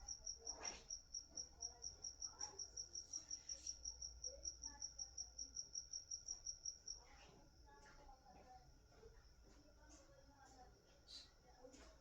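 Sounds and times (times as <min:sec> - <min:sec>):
cricket chirping: 0:00.0 - 0:07.8.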